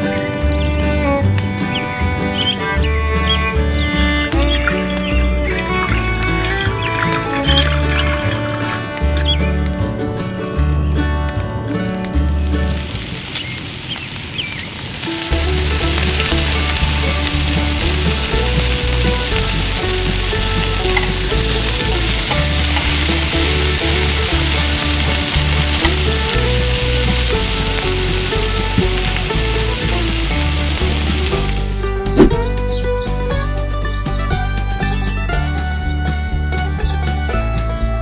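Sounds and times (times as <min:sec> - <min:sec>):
fish sizzling in hot oil: 0:03.7 - 0:09.4, 0:12.4 - 0:31.9
background music with bass: 0:15.3 - 0:38.0.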